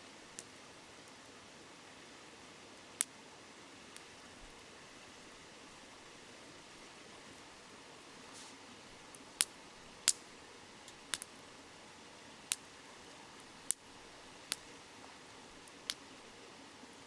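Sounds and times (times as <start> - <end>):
flowing river hiss: 0.0 - 17.0
campfire crackling: 0.1 - 17.0.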